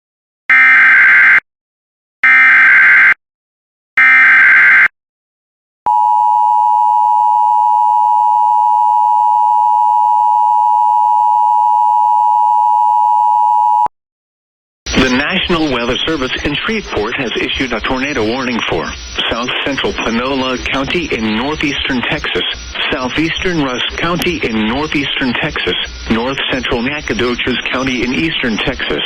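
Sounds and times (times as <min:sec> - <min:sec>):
two-tone alarm: 0:00.5 - 0:01.4, 0:02.2 - 0:03.2, 0:04.0 - 0:04.9, 0:05.9 - 0:13.9, 0:14.9 - 0:28.6
buzzy data tone bursts: 0:14.9 - 0:29.0.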